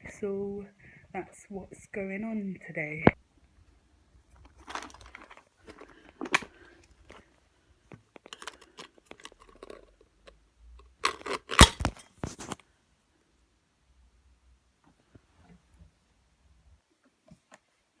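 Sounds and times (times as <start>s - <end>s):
handling rustling and clicking: 4.2s - 12.6s.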